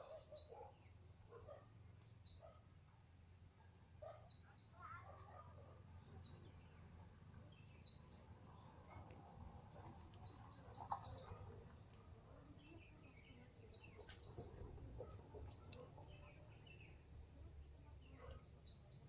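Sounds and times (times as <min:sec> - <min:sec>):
small bird chirping: 0:00.0 - 0:01.0, 0:04.0 - 0:05.0, 0:06.0 - 0:09.0, 0:09.8 - 0:11.5, 0:12.6 - 0:19.0.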